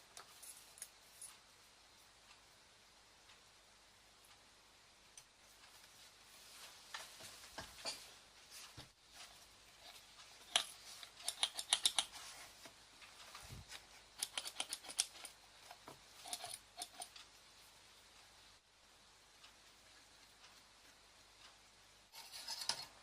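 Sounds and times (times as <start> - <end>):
small sharp clicks and taps: 10.3 - 13.4.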